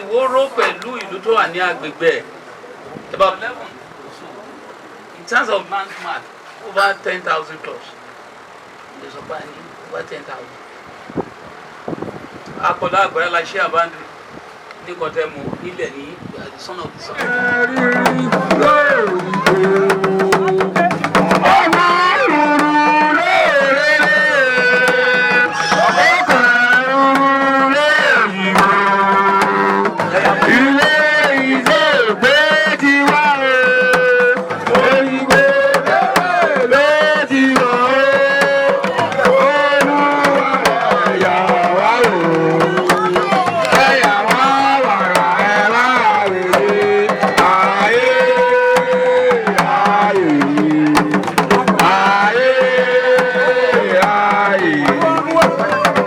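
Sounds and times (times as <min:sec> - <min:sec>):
hand drums and percussion: 0:17.1 - 0:56.0.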